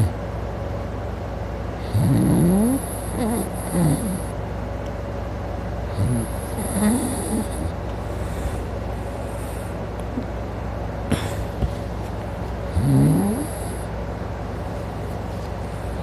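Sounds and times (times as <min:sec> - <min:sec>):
steady low hum: 0:00.0 - 0:16.0
man snoring: 0:01.8 - 0:04.4, 0:05.9 - 0:07.8, 0:12.7 - 0:13.9
sharp snort: 0:12.8 - 0:13.8.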